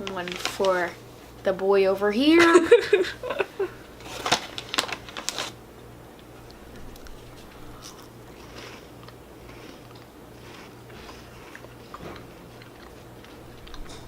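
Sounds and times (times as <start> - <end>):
people chewing crunchy puffs: 3.2 - 14.0.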